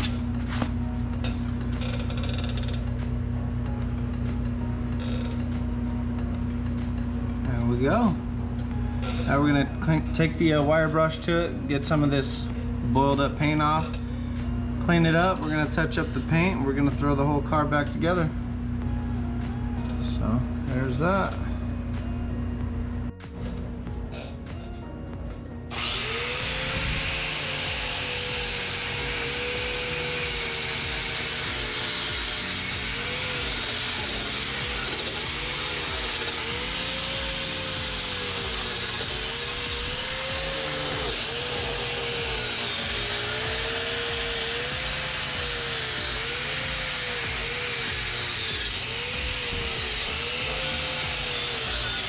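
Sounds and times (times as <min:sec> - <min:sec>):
power wire brush scouring steel: 0:25.7 - 0:52.0.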